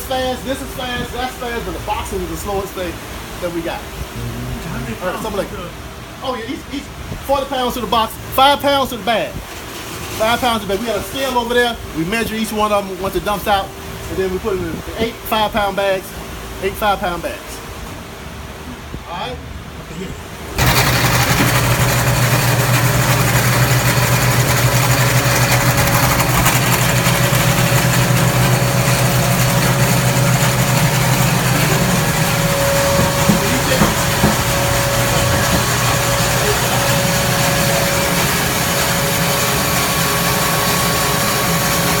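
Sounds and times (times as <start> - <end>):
milling machinery humming: 4.0 - 5.7, 20.6 - 42.0.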